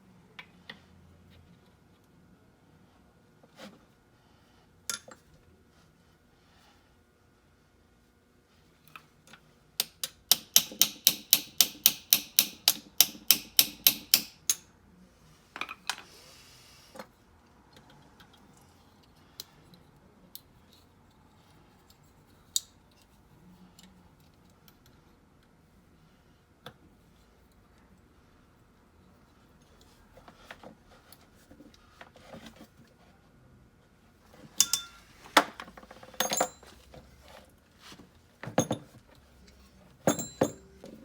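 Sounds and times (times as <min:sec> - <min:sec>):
metal clinks: 0:34.6 - 0:35.0, 0:36.2 - 0:36.7, 0:40.1 - 0:40.8.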